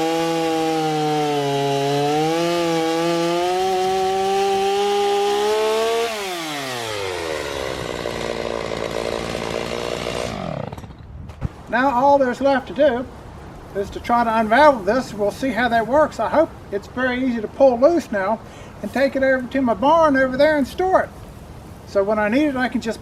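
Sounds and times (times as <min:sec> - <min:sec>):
chainsaw cutting hay bale: 0:00.0 - 0:11.1.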